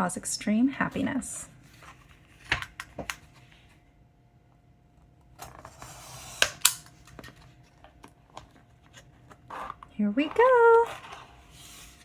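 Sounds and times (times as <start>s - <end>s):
packaging rustling: 6.8s - 12.0s.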